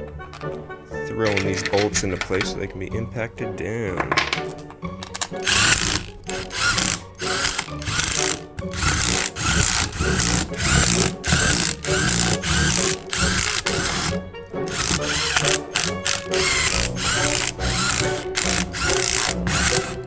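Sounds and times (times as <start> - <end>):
impact wrench running bolts: 5.1 - 20.0.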